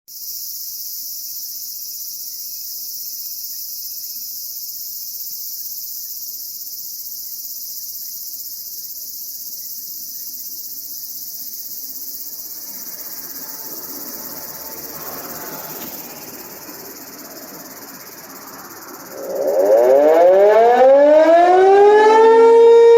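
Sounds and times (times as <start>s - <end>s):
insects chirring: 0.1s - 21.2s
soft low rushing noise: 16.0s - 20.5s.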